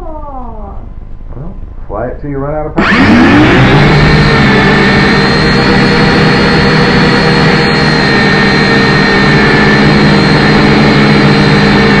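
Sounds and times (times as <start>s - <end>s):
drone propellers whining: 2.8s - 12.0s.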